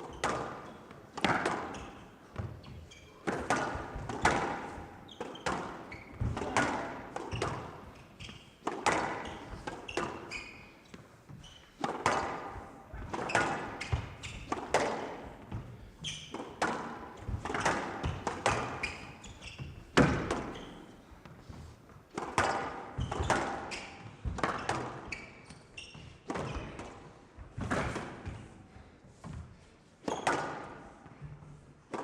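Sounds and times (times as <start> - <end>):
squash ball hits echoing: 0.1 - 2.6, 3.2 - 7.9, 8.6 - 10.3, 11.7 - 20.9, 22.1 - 25.0.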